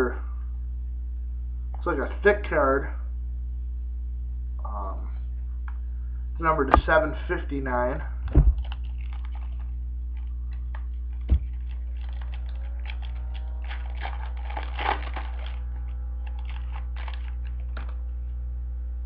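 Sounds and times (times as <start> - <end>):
steady electrical hum: 0.0 - 19.0
card packs crinkling and clicking: 8.5 - 18.1.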